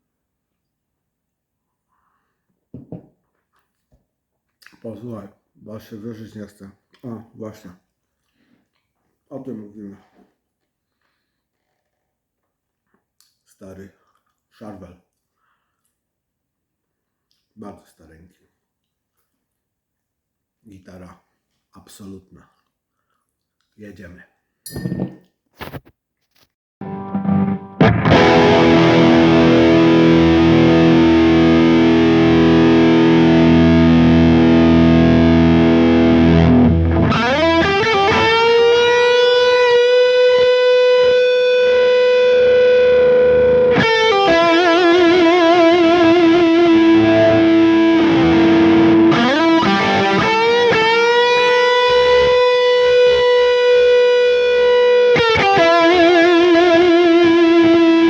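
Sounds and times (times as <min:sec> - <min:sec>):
distorted electric guitar: 0:26.8 - 0:58.0.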